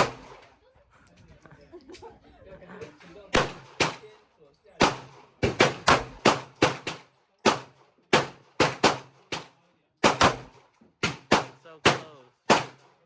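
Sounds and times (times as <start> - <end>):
gunshots with echo: 0.0 - 0.4, 3.3 - 4.1, 4.8 - 12.9.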